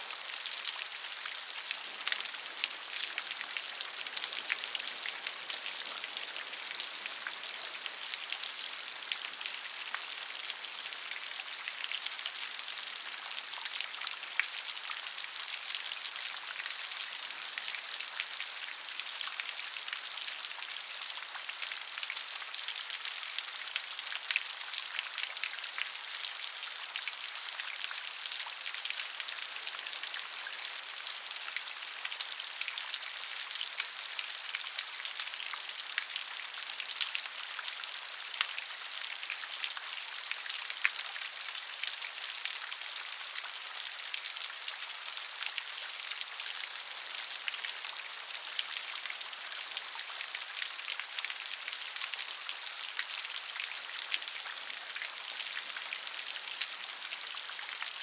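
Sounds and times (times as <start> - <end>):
steady rain pattering: 0.0 - 58.0.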